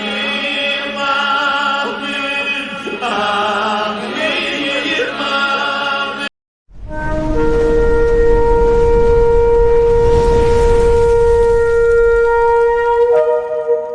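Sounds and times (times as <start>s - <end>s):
chanted singing: 0.0s - 6.3s
steady low drone: 6.8s - 12.9s.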